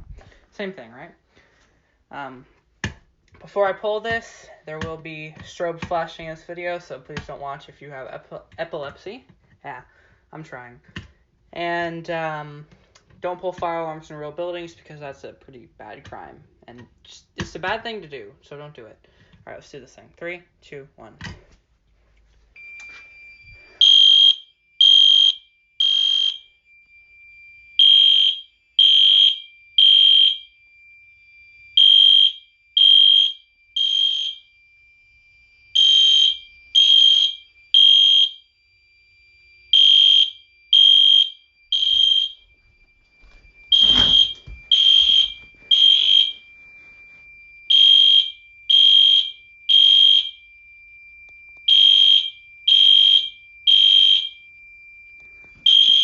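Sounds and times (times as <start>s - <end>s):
steady high tone: 22.6s - 56.0s
alarm horn blasts: 23.8s - 26.4s, 31.8s - 34.4s, 35.8s - 38.4s, 39.7s - 42.4s, 43.7s - 50.4s, 51.7s - 54.4s, 55.6s - 56.0s.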